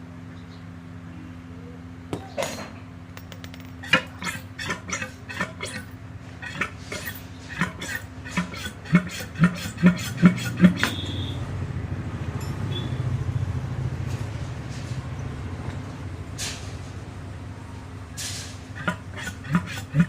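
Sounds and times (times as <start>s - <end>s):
metal parts clinking: 2.1s - 6.0s
low engine rumble: 10.1s - 19.4s.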